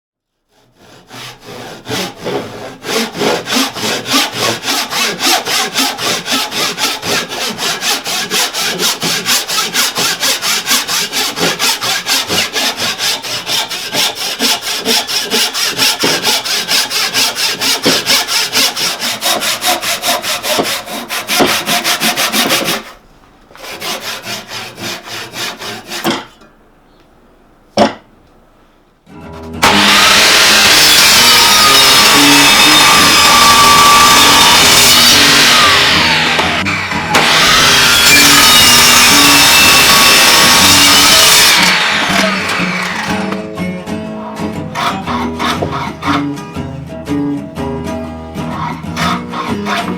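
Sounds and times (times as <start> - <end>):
hand saw cutting wood: 0.5 - 23.0, 23.6 - 26.4, 29.3 - 46.8, 48.4 - 49.9.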